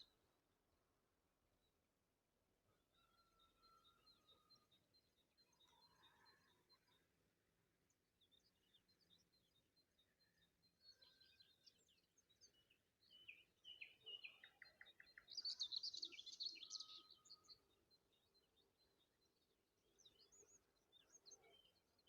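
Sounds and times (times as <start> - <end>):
songbirds chirping and whistling: 8.3 - 22.0.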